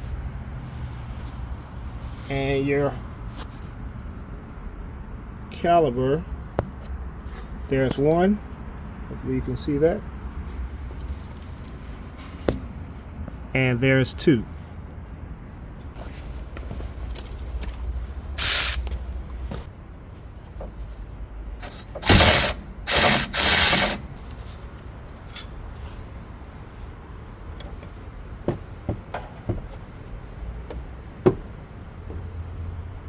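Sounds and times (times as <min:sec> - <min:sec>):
power wrench bursts: 0:18.4 - 0:19.0, 0:22.0 - 0:24.4
thin metallic ring: 0:22.1 - 0:24.0, 0:25.3 - 0:27.4.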